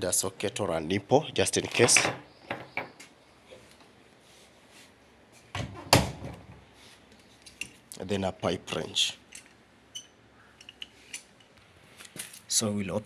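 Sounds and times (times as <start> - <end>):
light clicks of tools: 9.3 - 12.5.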